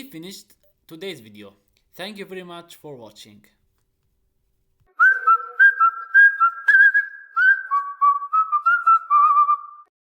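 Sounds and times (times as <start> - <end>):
whistled melody: 4.9 - 9.9.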